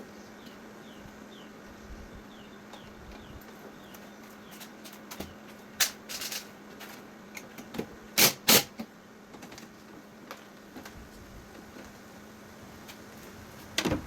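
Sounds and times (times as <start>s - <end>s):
faint steady hum: 0.0s - 14.0s
plastic parts clicking and knocking: 4.5s - 9.7s.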